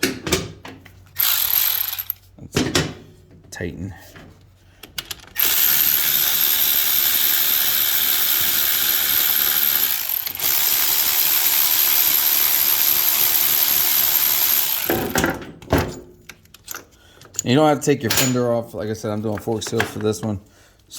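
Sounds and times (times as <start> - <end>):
electric ratchet whirring: 1.2 - 2.2, 5.3 - 15.2.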